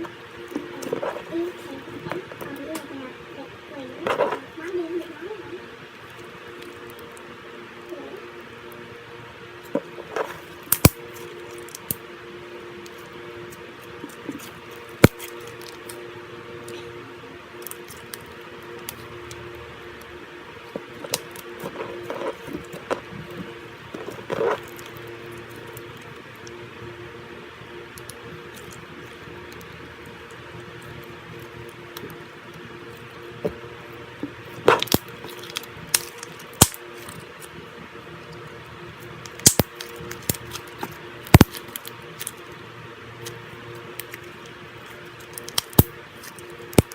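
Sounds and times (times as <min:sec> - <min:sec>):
faint steady hum: 0:00.0 - 0:46.9
slime clicks and pops: 0:39.4 - 0:40.4.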